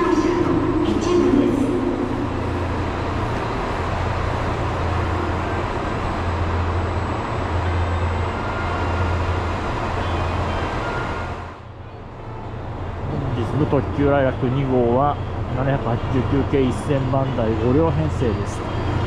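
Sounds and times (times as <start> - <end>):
train humming and hissing: 0.0 - 19.0.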